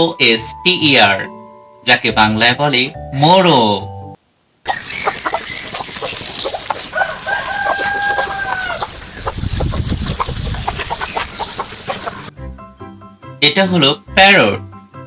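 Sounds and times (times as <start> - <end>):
chickens clucking: 4.7 - 12.3
rooster crowing: 6.7 - 9.2.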